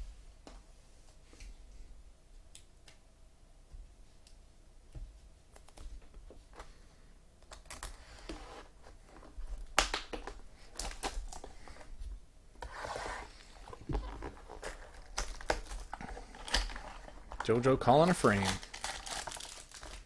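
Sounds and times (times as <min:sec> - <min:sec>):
packaging crinkling: 0:09.2 - 0:11.8, 0:13.3 - 0:20.0
cards clicking and tapping: 0:09.7 - 0:11.4.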